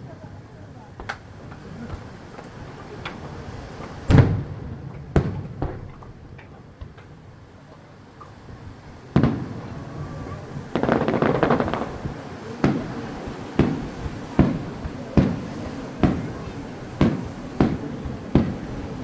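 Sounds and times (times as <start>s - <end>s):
fireworks crackling: 0.1s - 19.0s
fireworks bangs: 4.0s - 19.0s.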